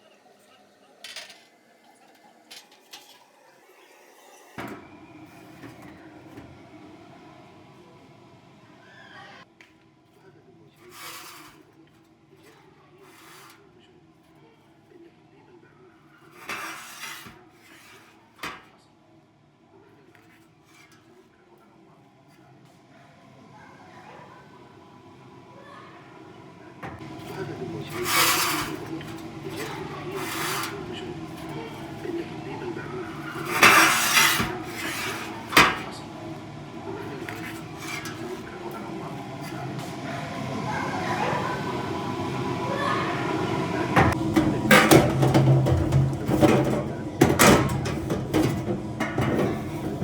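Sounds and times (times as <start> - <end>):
metal clank: 26.8 - 36.2, 36.9 - 38.5, 44.0 - 50.0
metal filter clattering: 26.8 - 38.8, 44.0 - 50.0.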